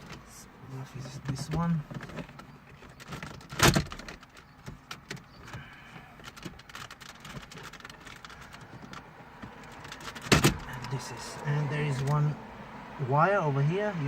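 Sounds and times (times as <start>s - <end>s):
plastic clicks and rattles: 1.2s - 10.6s.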